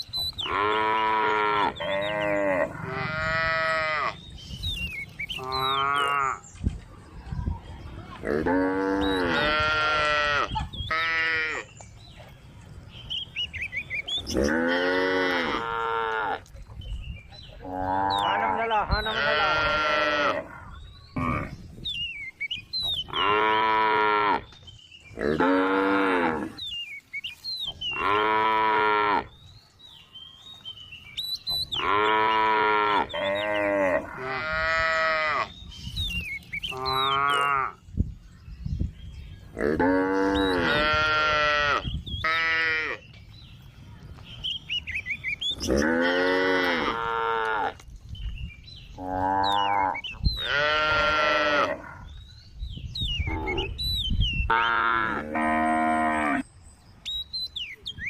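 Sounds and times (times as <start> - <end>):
cows mooing: 0.5 - 4.2, 5.4 - 6.4, 8.2 - 11.7, 14.2 - 16.5, 17.6 - 21.6, 23.1 - 24.5, 25.2 - 26.6, 28.0 - 29.3, 31.8 - 35.6, 39.6 - 43.0, 45.6 - 47.8, 49.0 - 52.1, 54.5 - 56.4.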